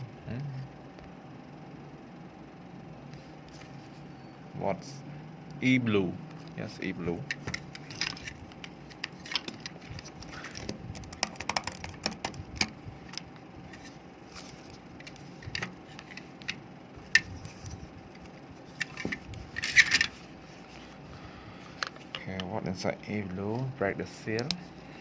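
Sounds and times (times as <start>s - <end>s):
plastic parts clicking: 7.2s - 17.7s.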